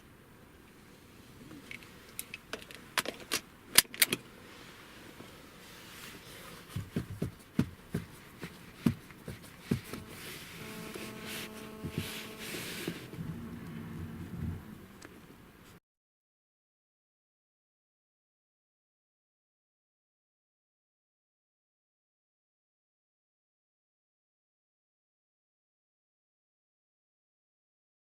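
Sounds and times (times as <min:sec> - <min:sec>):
low hum and hiss: 0:00.0 - 0:15.8.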